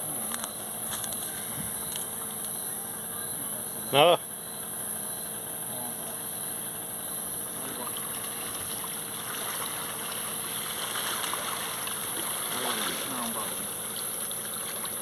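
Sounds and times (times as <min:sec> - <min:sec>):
river water rushing: 0:07.8 - 0:15.0.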